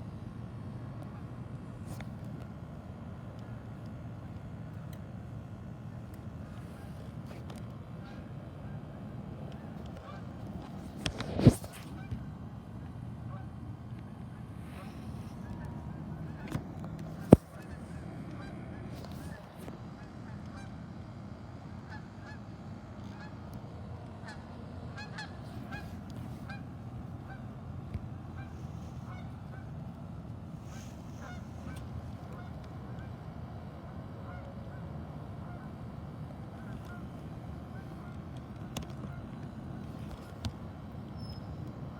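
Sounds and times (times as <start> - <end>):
low background rumble: 0.0 - 41.9
geese honking: 6.6 - 12.2, 14.4 - 20.8, 21.8 - 27.5, 28.2 - 29.8, 30.6 - 41.7.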